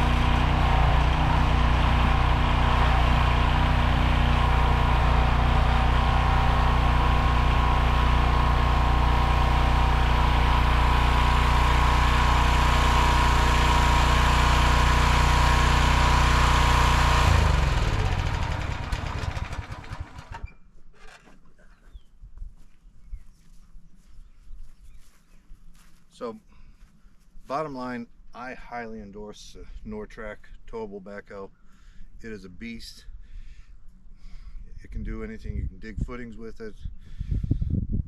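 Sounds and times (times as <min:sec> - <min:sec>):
backhoe engine running: 0:00.0 - 0:20.5.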